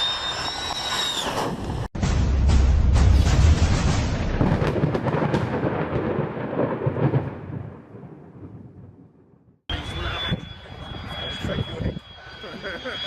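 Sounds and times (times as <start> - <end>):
jet aircraft rumble: 9.7 - 13.0.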